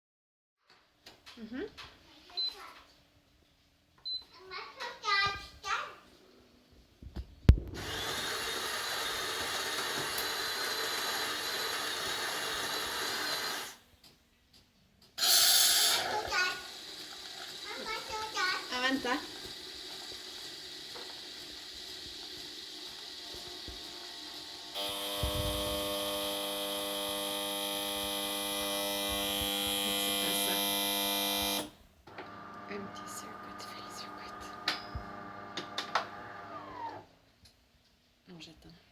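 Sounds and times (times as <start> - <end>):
coffee machine buzzing hum: 7.8 - 13.8, 18.6 - 37.0
loud steady buzz: 24.7 - 31.7.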